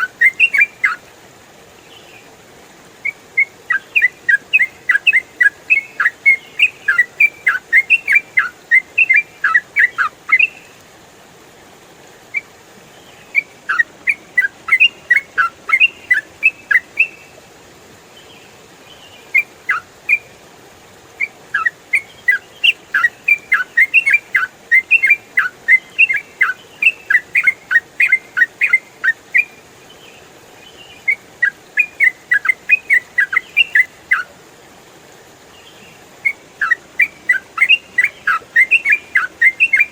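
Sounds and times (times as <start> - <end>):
bird singing falling whistled notes: 0.0 - 1.0, 3.4 - 10.6, 13.3 - 17.2, 21.6 - 29.5, 36.2 - 39.9.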